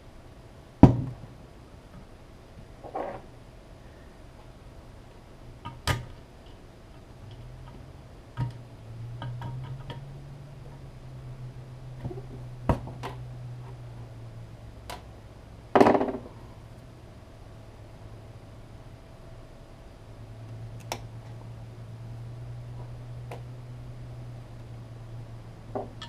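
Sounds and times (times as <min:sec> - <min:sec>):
parts clicking and knocking: 0:07.2 - 0:10.9.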